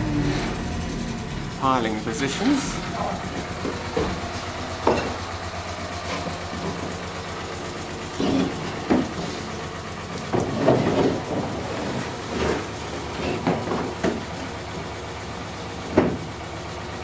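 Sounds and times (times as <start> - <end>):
engine running steadily: 0.0 - 17.0
metal knocks and clanks: 2.3 - 5.3, 8.1 - 9.3, 10.3 - 14.3.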